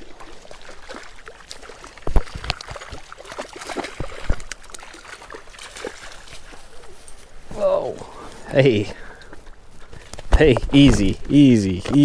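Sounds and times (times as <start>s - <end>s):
stream water running: 0.0s - 12.0s
water splashing: 0.0s - 12.0s
dull thumps: 10.2s - 12.0s.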